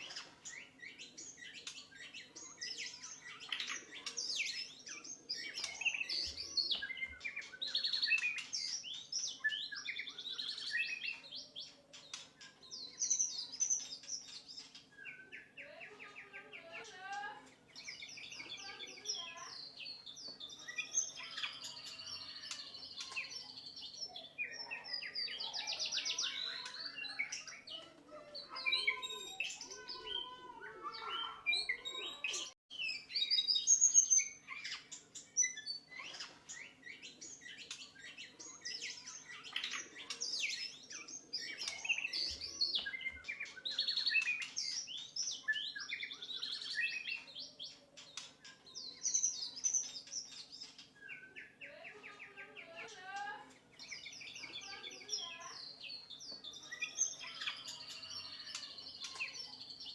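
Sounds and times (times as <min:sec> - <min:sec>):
bird singing whistles and trills: 0:00.0 - 0:15.5, 0:30.9 - 0:51.6.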